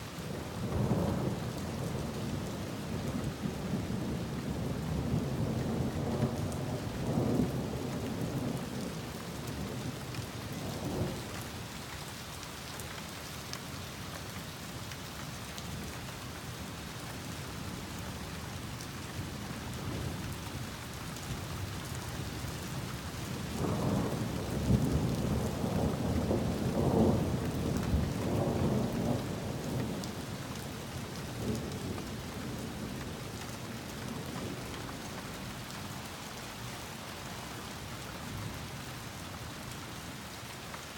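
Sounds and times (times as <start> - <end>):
heavy rain falling: 0.0 - 40.9
thunder rumbling: 23.6 - 30.3.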